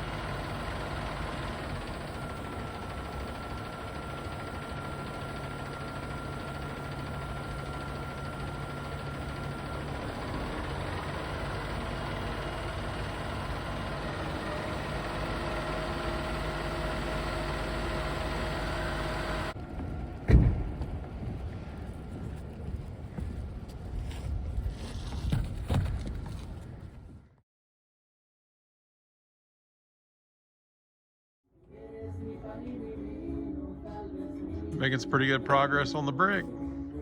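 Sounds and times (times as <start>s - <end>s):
truck engine running: 0.0s - 25.3s, 34.2s - 36.5s
loud thump: 20.2s - 20.9s.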